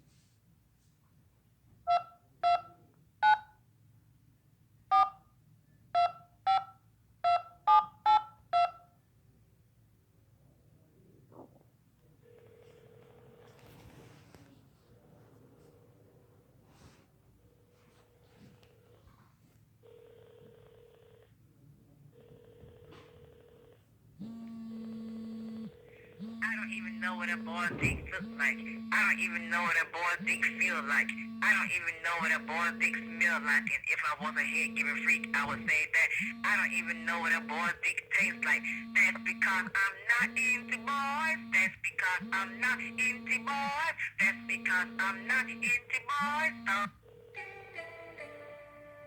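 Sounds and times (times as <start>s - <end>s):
touch-tone keypad beeps: 7.3s - 8.8s
telephone ringback tone: 12.2s - 13.6s, 19.8s - 21.2s, 44.2s - 48.0s.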